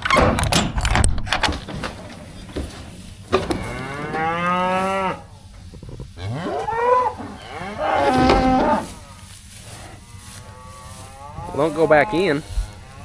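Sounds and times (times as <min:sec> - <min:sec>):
cattle mooing: 0:03.4 - 0:05.3, 0:06.1 - 0:13.0.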